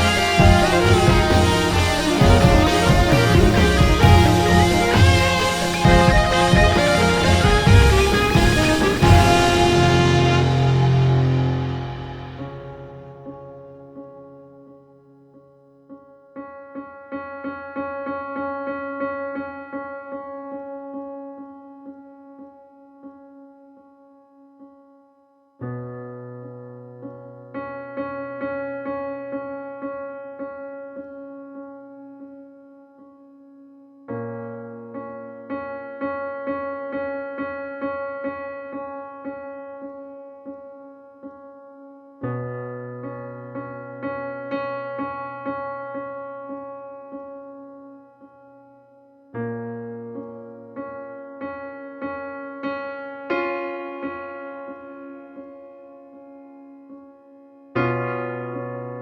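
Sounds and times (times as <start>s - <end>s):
low bass notes: 0.0s - 13.1s
keyboard playing repeated notes: 0.0s - 13.5s.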